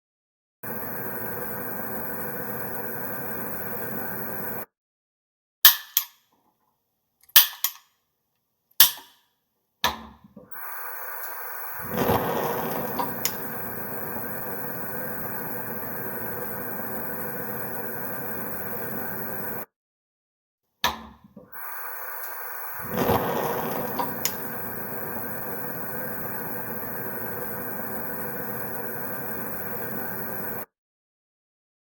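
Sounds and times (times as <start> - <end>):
gas burner hissing: 0.6 - 4.7, 10.5 - 19.7, 21.5 - 30.7
gas igniter clicking: 5.7 - 6.2, 7.4 - 7.8, 8.8 - 9.1, 10.6 - 19.5, 21.6 - 30.6
gas catching with a whoosh: 11.2 - 17.3, 21.6 - 28.6.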